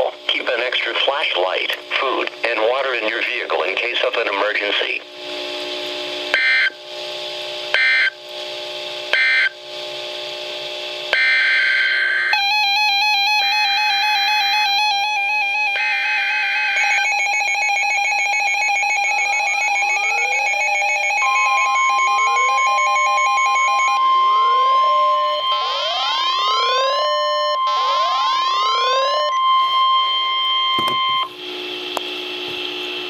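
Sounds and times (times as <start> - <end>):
rising electronic chirps: 19.4 - 31.3.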